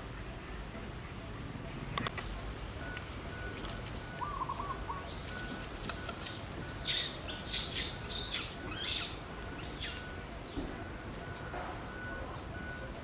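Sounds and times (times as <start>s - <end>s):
high-pitched animal calls: 4.2s - 10.1s.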